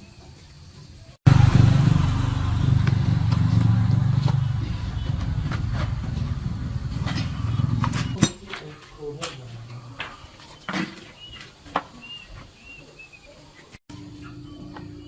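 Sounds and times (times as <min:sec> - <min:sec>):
small petrol engine running: 0:01.3 - 0:08.2.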